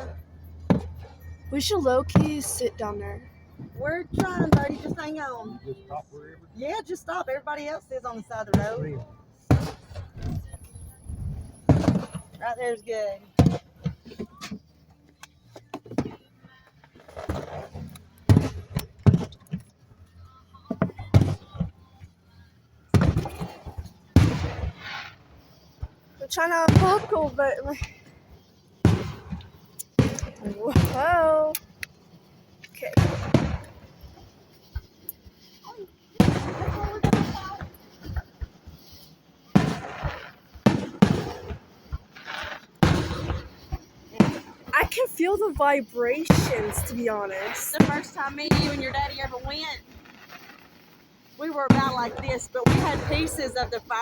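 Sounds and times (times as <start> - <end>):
faint firework pops: 0.0 - 5.6, 7.5 - 22.2, 22.8 - 54.0
firework booms: 0.0 - 5.6, 6.8 - 14.7, 16.9 - 22.1, 22.8 - 54.0
sharp bangs and knocks: 11.7 - 12.3.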